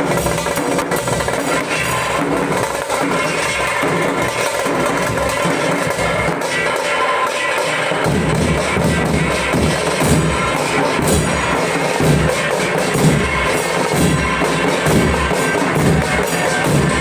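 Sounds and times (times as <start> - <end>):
dhol drums beating: 0.0 - 17.0.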